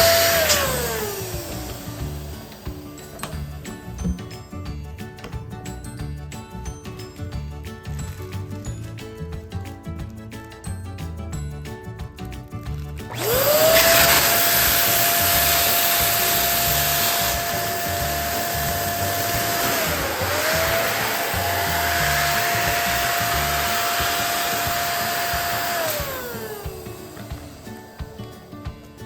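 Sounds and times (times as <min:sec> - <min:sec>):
electric pump motor whine: 0:00.0 - 0:03.3, 0:13.1 - 0:27.6.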